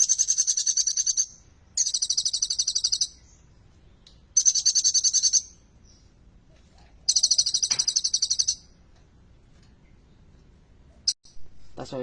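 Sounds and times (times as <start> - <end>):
bird trilling song: 0.0 - 6.2, 7.0 - 8.8.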